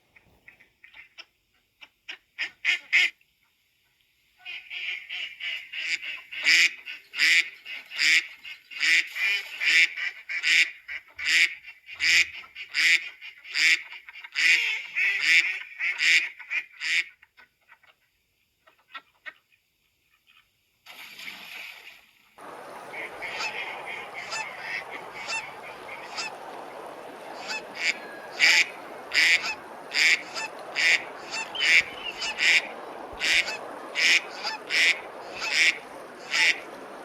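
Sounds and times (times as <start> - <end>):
geese and ducks honking: 22.4 - 37.0.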